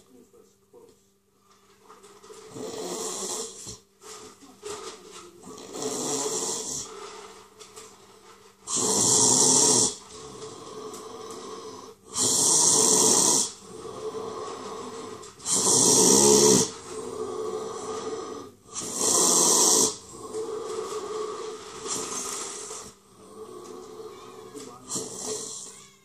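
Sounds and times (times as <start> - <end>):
faint breathing: 5.6 - 7.5, 9.9 - 24.4
heavy gasping breaths: 9.8 - 24.2.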